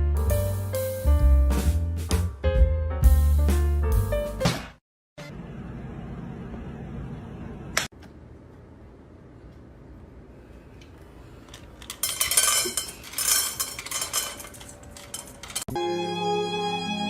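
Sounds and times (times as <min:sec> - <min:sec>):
tableware clinking and clattering: 0:11.8 - 0:15.7
violin-led music: 0:15.7 - 0:17.0.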